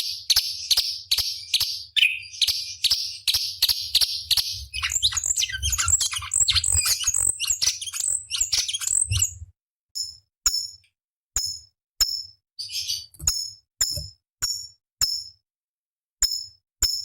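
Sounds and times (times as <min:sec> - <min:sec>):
bird singing: 0:00.0 - 0:09.4
bird twittering and whistling: 0:00.0 - 0:09.4
harsh rasping bird notes: 0:04.4 - 0:09.4.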